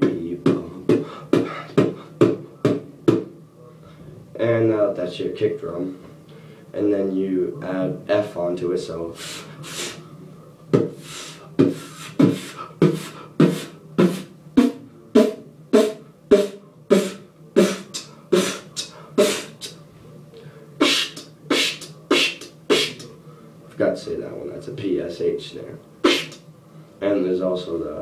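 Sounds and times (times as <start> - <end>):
beatboxing kick and snare: 0.0 - 3.3, 10.7 - 19.8, 20.8 - 23.1, 26.0 - 26.4.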